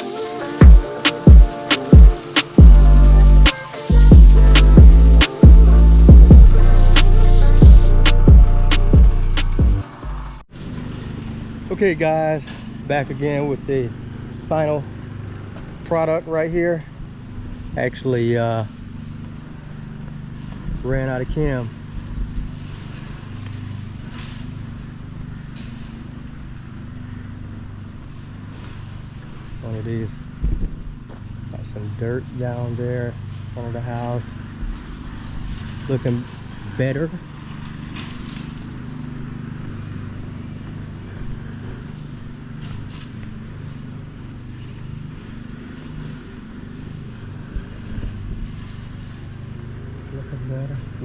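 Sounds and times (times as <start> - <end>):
pressure washer engine running: 0.0 - 10.4.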